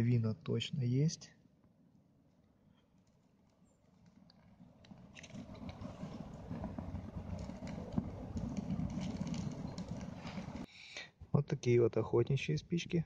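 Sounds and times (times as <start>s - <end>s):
small crackles: 2.3s - 10.7s
match flaring and hissing: 5.2s - 10.7s.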